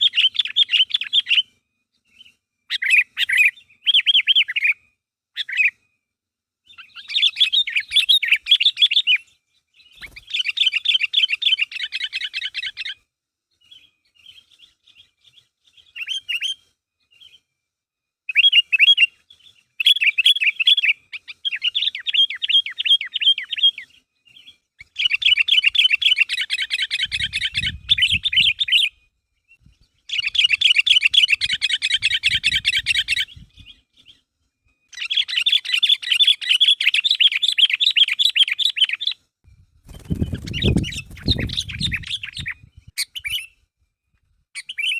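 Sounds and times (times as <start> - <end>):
bulbul chattering song: 30.1 - 33.7, 39.9 - 43.5.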